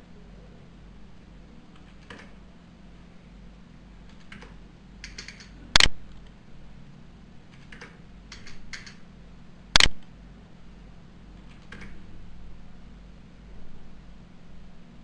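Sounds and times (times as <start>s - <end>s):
typing on computer keyboard: 1.7s - 2.4s, 4.1s - 5.9s, 7.5s - 9.0s, 11.4s - 12.0s
loud sharp clicks: 4.1s - 6.3s, 7.5s - 9.0s, 9.8s - 10.1s, 11.4s - 12.0s.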